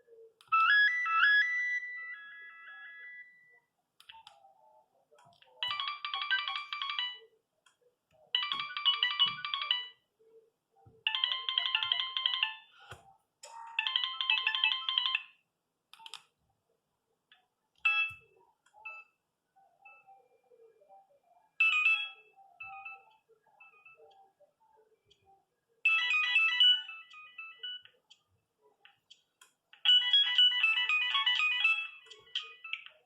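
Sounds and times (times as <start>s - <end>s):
phone ringtone trilling tones: 0.5s - 3.6s, 5.6s - 7.3s, 8.4s - 10.0s, 13.8s - 15.4s, 21.6s - 24.1s, 25.9s - 27.9s, 29.8s - 32.9s.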